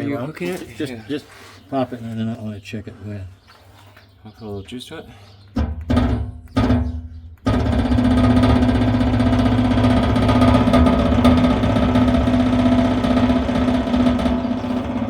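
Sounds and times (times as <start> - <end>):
electric pump buzzing hum: 7.4 - 15.0.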